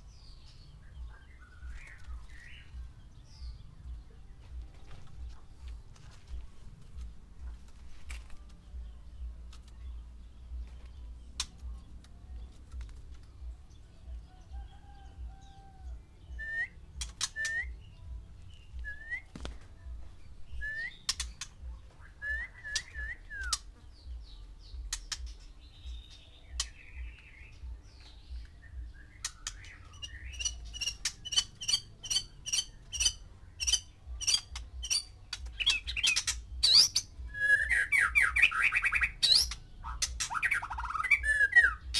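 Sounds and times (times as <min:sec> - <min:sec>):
bird clicking calls: 0:22.7 - 0:23.7, 0:29.2 - 0:37.0.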